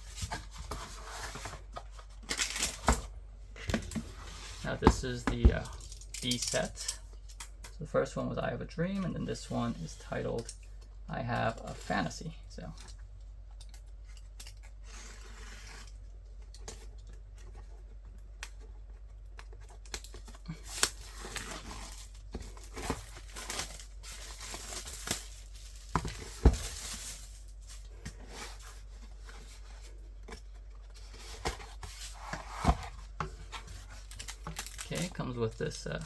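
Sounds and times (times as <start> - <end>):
plastic wrap crinkling: 20.0 - 27.9, 33.9 - 35.2.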